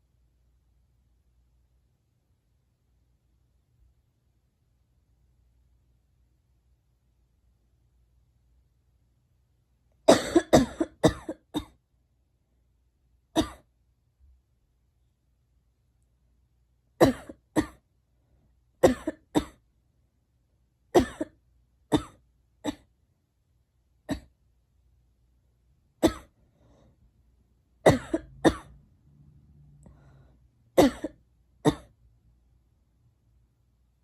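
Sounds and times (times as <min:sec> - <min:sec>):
girl coughing: 0:10.1 - 0:11.8, 0:13.4 - 0:13.7, 0:17.0 - 0:17.8, 0:18.8 - 0:19.6, 0:21.0 - 0:22.8, 0:26.0 - 0:26.3, 0:27.9 - 0:28.7, 0:30.8 - 0:31.9.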